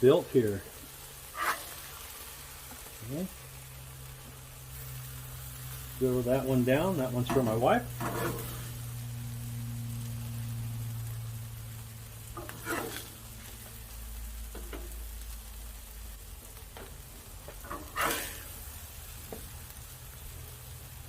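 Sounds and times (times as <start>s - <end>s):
meat sizzling on griddle: 0.0s - 21.0s
scrapes and clanks on griddle: 0.7s - 3.0s, 7.0s - 9.0s, 12.2s - 13.8s, 14.4s - 15.2s, 16.4s - 19.8s
low hum: 7.3s - 21.0s.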